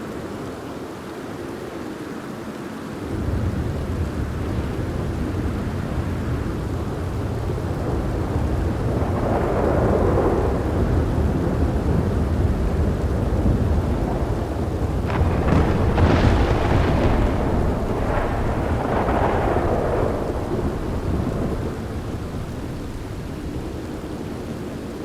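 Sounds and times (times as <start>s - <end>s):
steady rain: 0.0s - 25.0s
rolling thunder: 3.0s - 25.0s.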